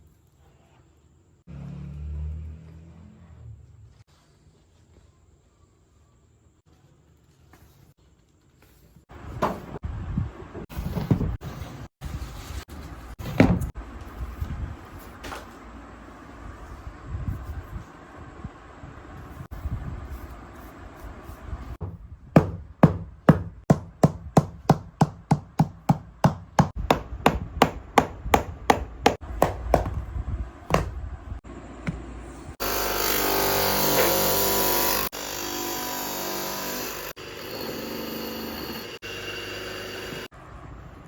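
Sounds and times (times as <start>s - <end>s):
hammer knocking on shoe: 21.8s - 30.0s, 30.7s - 31.0s
power tool running: 32.6s - 40.3s.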